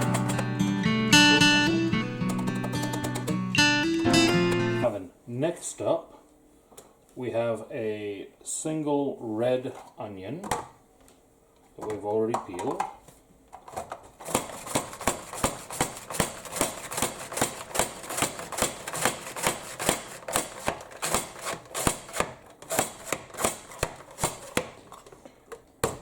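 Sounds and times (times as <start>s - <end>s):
knife slicing onion: 14.3s - 24.7s.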